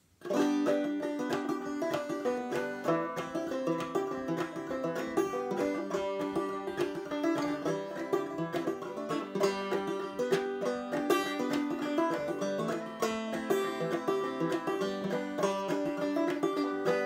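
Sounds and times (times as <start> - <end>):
banjo plucked and strummed: 0.0 - 17.0.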